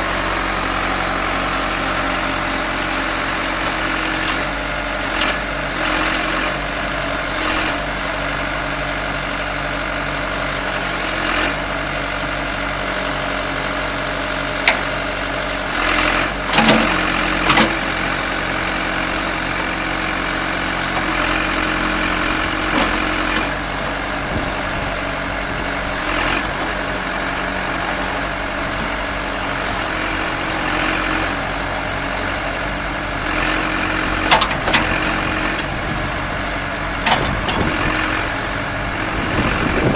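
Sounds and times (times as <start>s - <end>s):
diesel engine idling: 13.1s - 39.9s.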